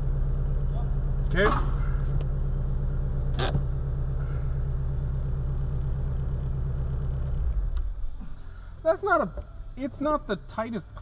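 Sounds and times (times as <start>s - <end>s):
car engine running at low speed: 0.0s - 11.0s.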